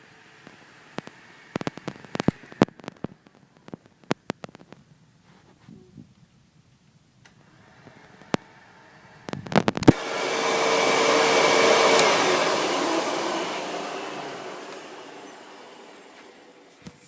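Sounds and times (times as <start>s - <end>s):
vacuum cleaner motor whine: 7.4s - 17.0s
vacuum cleaner clicks: 9.3s - 17.0s.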